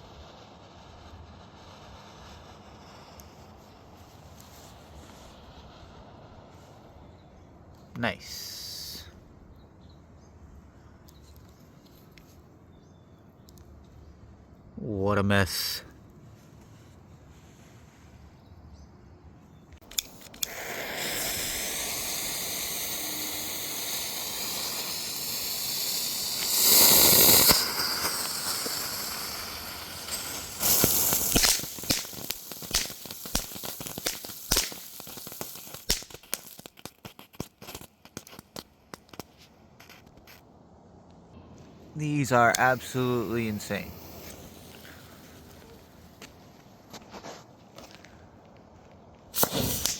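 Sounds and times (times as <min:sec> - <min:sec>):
firework pops and crackles: 0:00.0 - 0:07.0, 0:19.8 - 0:40.5, 0:42.3 - 0:48.1, 0:49.2 - 0:49.9
firework hissing: 0:00.0 - 0:07.6, 0:08.2 - 0:09.4, 0:19.8 - 0:40.0, 0:42.0 - 0:46.4, 0:49.3 - 0:49.9.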